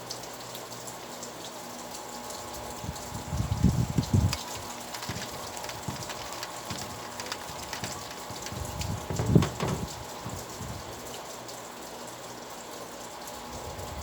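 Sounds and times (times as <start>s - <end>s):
rain falling: 0.0s - 14.0s
low thuds: 4.6s - 11.0s.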